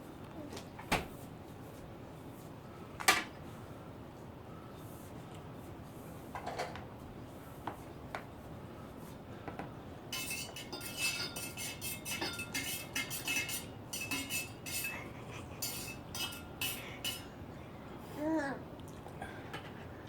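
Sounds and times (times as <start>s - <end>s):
metal utensils clinking on a dish: 10.1s - 17.4s.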